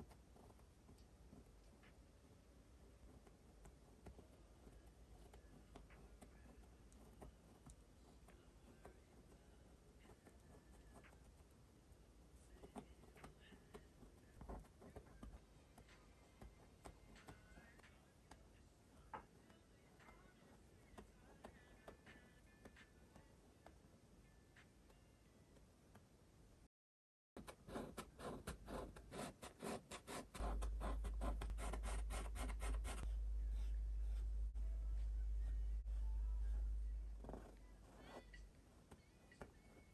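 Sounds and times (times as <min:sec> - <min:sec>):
brush stroking paint on canvas: 0:27.8 - 0:38.3
steady low hum: 0:27.8 - 0:38.9.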